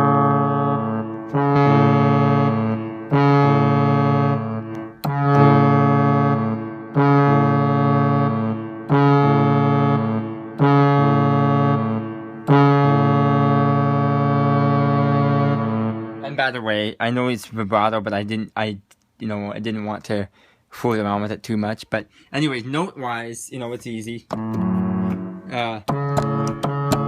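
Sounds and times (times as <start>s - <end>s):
electronic keyboard horn blasts: 0.0s - 16.8s, 24.2s - 27.0s.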